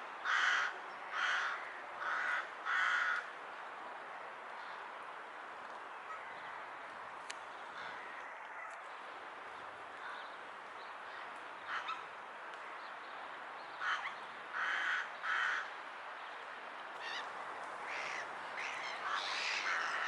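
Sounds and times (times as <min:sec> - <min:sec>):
rook cawing: 0:00.2 - 0:03.3, 0:07.7 - 0:08.3, 0:13.8 - 0:15.8, 0:17.0 - 0:20.0.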